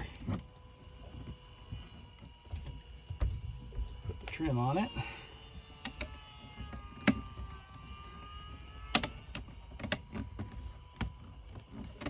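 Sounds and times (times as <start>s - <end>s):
sharp plastic clicks: 5.7s - 7.5s, 8.8s - 12.0s
plastic trim handling ticks: 5.8s - 6.2s, 8.8s - 12.0s.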